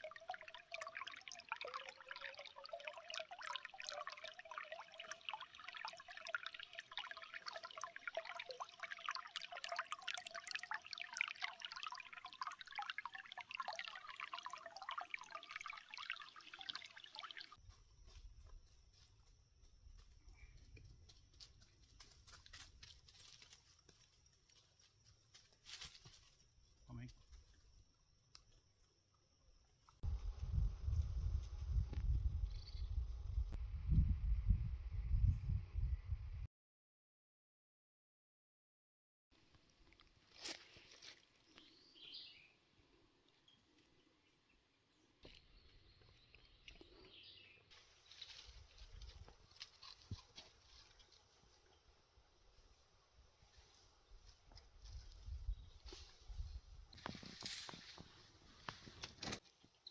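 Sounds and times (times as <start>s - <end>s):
water trickling: 0.0s - 17.6s.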